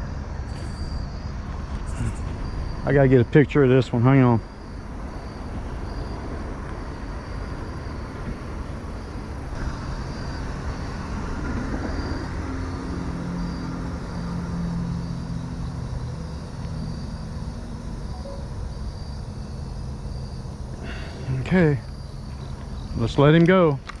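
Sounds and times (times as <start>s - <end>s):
distant engine drone: 0.0s - 24.0s
faint insect chirp: 0.0s - 24.0s.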